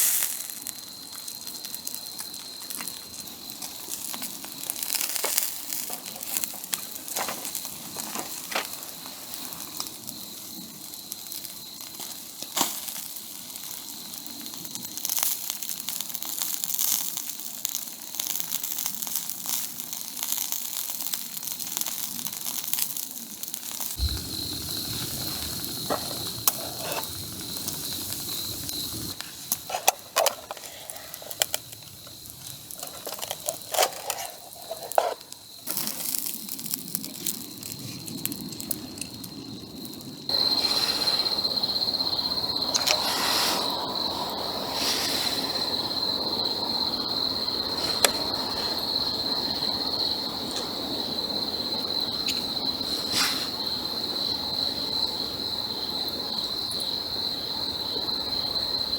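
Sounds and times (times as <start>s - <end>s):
wood fire crackling and popping: 0.0s - 40.6s
steady hiss: 0.0s - 49.6s.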